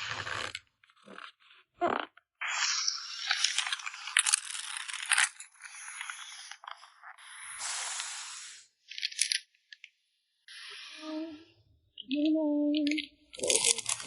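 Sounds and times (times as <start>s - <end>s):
packing materials rustling: 3.3s - 8.2s, 13.4s - 14.0s
smooth hiss: 7.2s - 8.7s.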